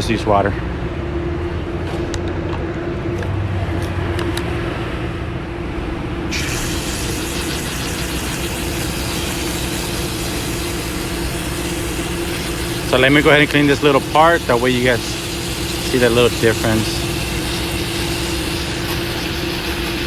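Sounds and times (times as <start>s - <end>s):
mechanical hum: 0.0s - 20.0s
water spraying hiss: 6.3s - 20.0s.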